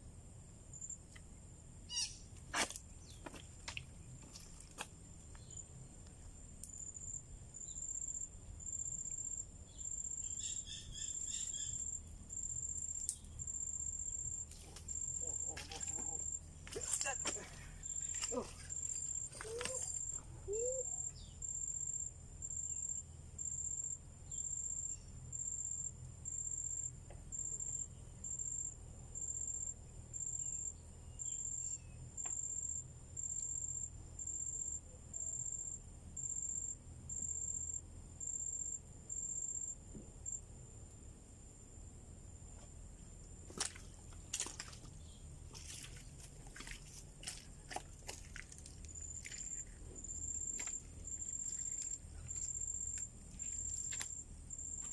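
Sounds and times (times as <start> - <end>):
insect chirping: 0.0 - 54.9.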